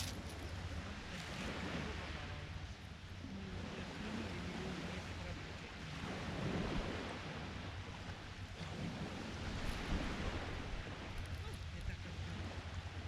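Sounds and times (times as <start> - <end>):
sea surf washing on beach: 0.0 - 13.0
wind buffeting microphone: 4.5 - 13.0.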